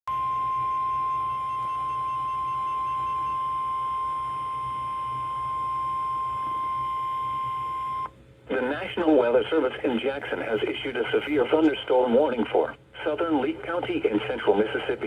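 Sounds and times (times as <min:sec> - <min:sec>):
high steady alarm tone: 0:00.1 - 0:08.1.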